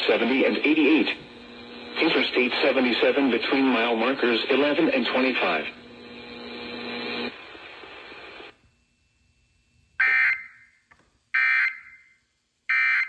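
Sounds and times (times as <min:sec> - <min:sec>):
radio hiss: 0:00.0 - 0:08.6.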